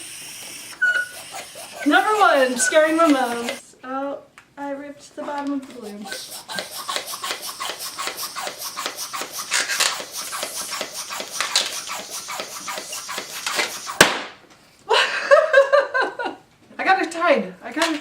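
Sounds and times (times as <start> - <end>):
balloon squeaking and rubbing: 0.0 - 3.6, 5.7 - 14.2.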